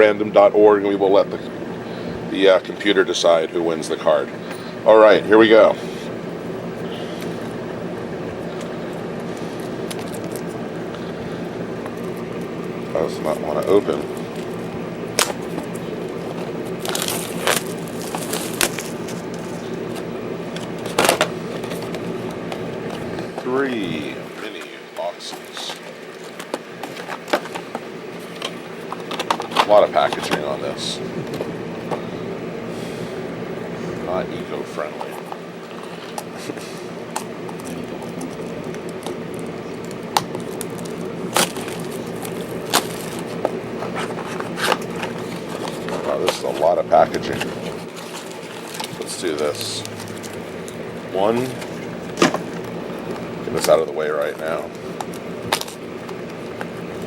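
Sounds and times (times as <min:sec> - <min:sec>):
steady hum: 0:00.0 - 0:57.0
packaging crackling as torn open: 0:15.2 - 0:22.0, 0:37.2 - 0:50.8, 0:51.4 - 0:57.0.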